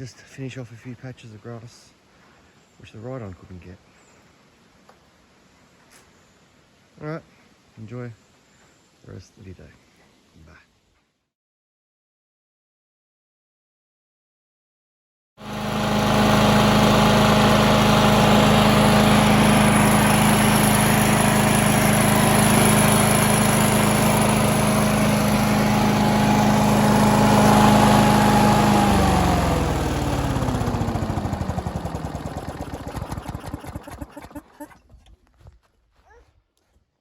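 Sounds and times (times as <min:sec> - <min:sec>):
lawnmower engine running: 0:15.4 - 0:35.2.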